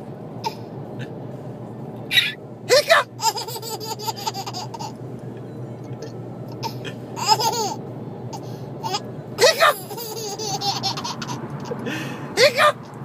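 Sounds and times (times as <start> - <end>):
car cabin hum: 0.0 - 13.0
baby laughing: 2.1 - 5.0, 6.0 - 11.8.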